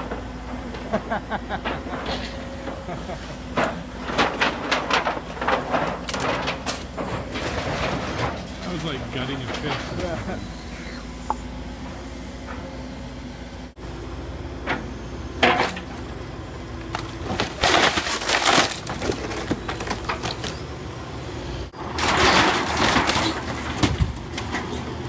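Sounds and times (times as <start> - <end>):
wood breaking and splintering: 3.6 - 10.1, 16.9 - 20.6, 21.8 - 24.6.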